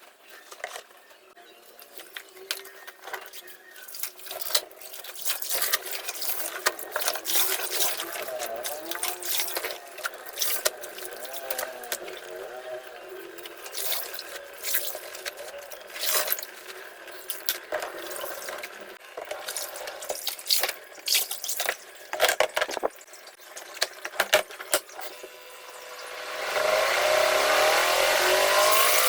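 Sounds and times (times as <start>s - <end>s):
water splashing laundry: 1.9s - 25.1s
washing machine motor whine: 6.4s - 17.0s, 25.0s - 29.0s.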